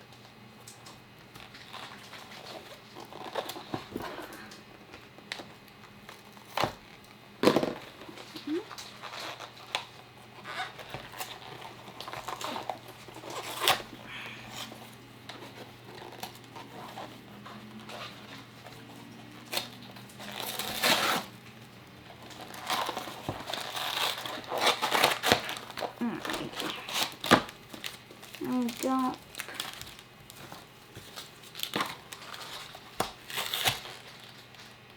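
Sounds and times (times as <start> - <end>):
cardboard and wrappers crinkling: 1.3 - 7.1, 7.8 - 34.9.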